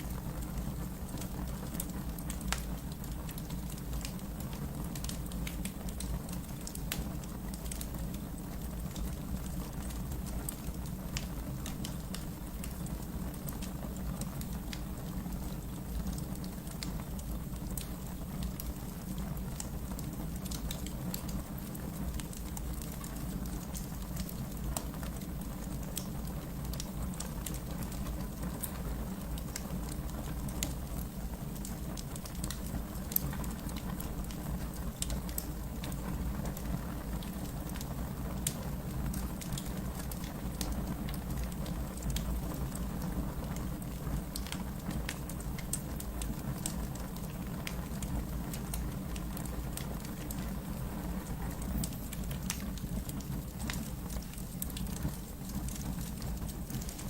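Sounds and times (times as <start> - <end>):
fire crackles and pops: 0.0 - 57.0
fire rumbling: 0.0 - 57.0.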